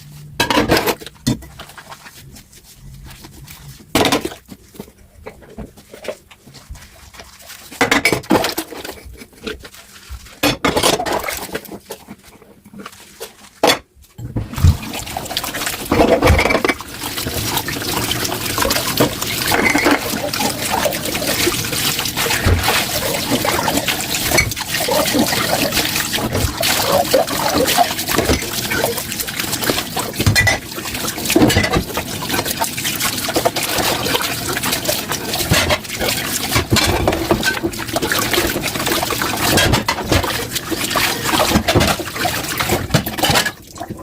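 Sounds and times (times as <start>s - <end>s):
dishes clinking in a sink: 0.4s - 1.7s, 15.9s - 16.9s, 18.5s - 29.1s, 30.1s - 32.0s, 35.3s - 38.7s
tap water running over dishes: 0.4s - 44.0s.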